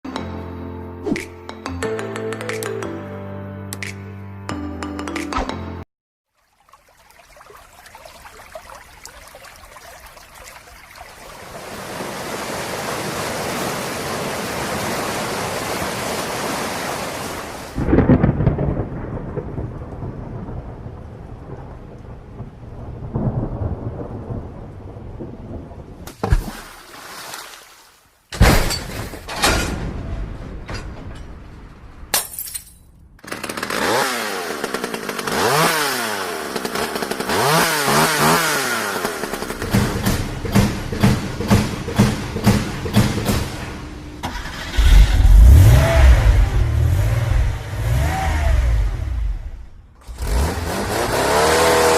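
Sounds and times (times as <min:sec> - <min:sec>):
heavy rain: 0:08.1 - 0:26.0
thunder rumbling and cracking: 0:17.8 - 0:26.1, 0:29.6 - 0:32.2, 0:44.3 - 0:50.5.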